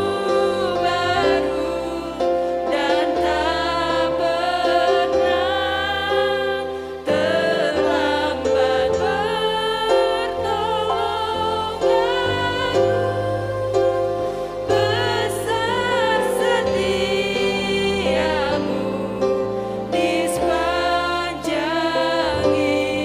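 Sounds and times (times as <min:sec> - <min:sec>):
person singing with vibrato: 0:00.0 - 0:23.0
sustained chords: 0:00.0 - 0:23.0.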